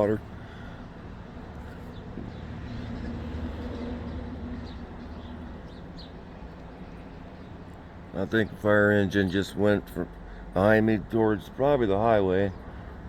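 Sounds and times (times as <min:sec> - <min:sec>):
heavy vehicle passing: 0:00.0 - 0:08.1
bird chirps: 0:01.7 - 0:07.7.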